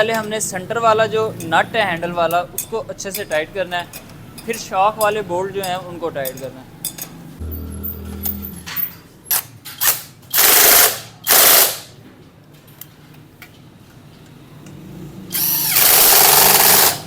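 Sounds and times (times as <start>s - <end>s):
light metal clinks: 1.4s - 9.0s
ratchet wrench clicking: 8.2s - 11.9s, 14.6s - 17.0s.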